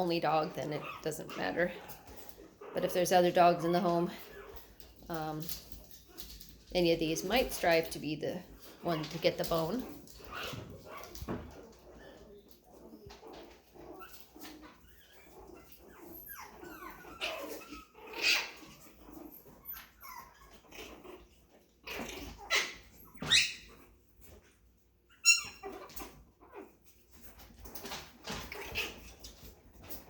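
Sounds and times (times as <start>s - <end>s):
puppy yips and squeals: 14.0s - 21.0s, 22.2s - 23.9s, 25.1s - 26.7s.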